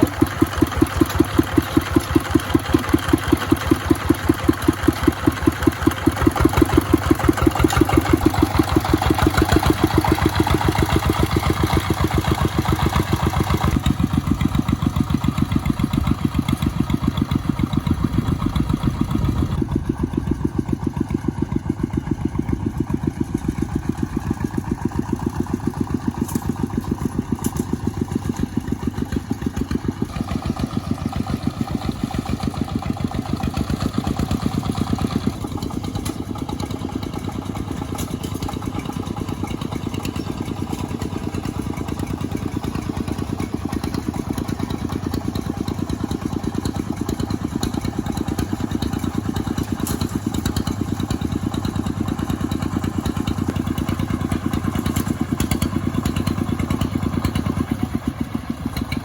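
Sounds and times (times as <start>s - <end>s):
small engine running: 0.0s - 59.0s.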